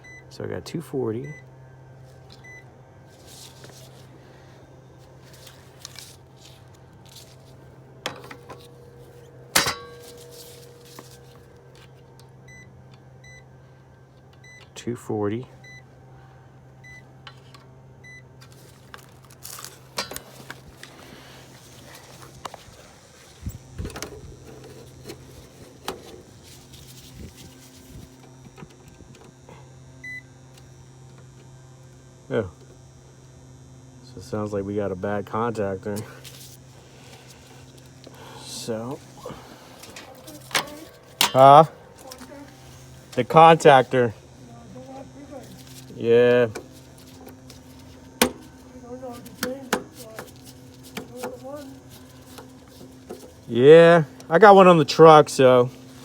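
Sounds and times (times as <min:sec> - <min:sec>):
low electrical hum: 0:00.0 - 0:56.0
metal clinks and knocks: 0:08.0 - 0:11.4, 0:39.8 - 0:42.3.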